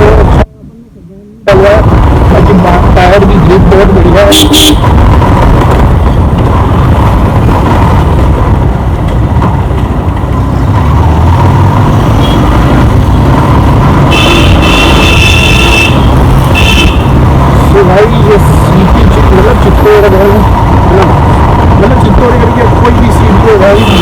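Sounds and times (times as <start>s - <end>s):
wind and road noise: 0.0s - 24.0s
vehicle horn: 4.3s - 4.9s, 14.0s - 17.2s, 23.7s - 24.0s.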